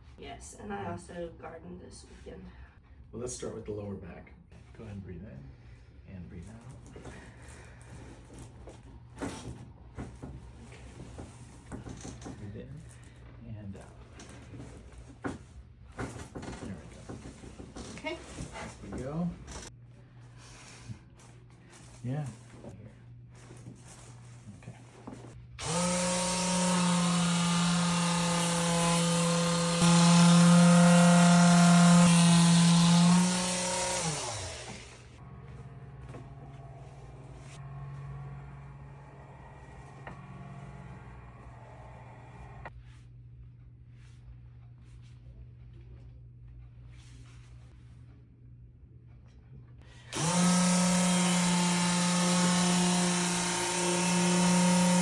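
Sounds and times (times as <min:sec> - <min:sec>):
electric motor humming: 0:25.6 - 0:42.7, 0:50.1 - 0:55.0.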